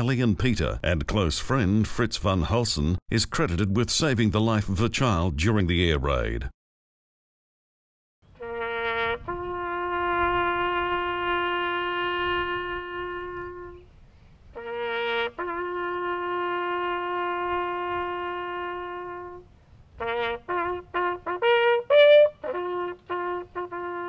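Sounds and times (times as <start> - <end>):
solo brass call: 8.3 - 24.0.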